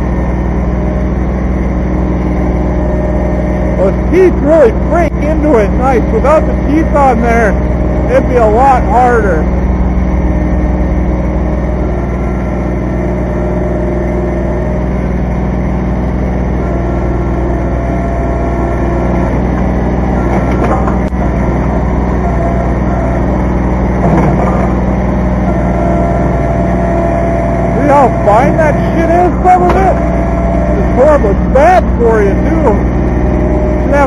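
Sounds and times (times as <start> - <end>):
diesel tractor engine running: 0.0 - 34.0
thin whine: 16.3 - 34.0.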